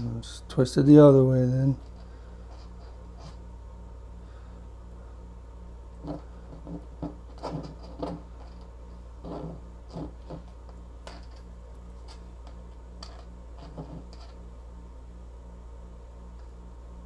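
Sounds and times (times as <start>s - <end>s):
hands twisting wire: 1.7s - 3.5s, 6.0s - 14.4s.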